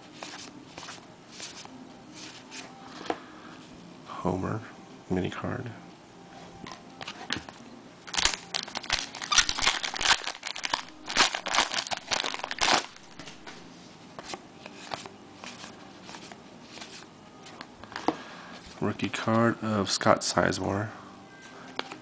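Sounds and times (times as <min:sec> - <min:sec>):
wrapper crinkling and tearing: 0:08.1 - 0:13.4.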